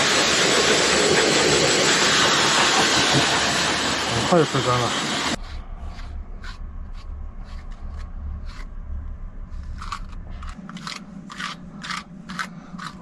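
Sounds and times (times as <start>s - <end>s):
brush scratching through dog fur: 5.4s - 8.7s.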